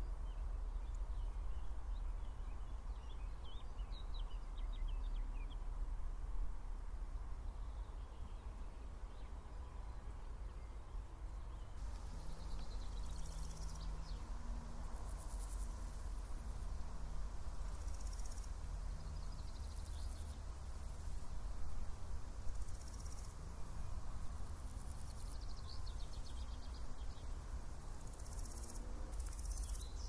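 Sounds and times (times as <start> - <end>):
insect stridulating: 11.8 - 30.0.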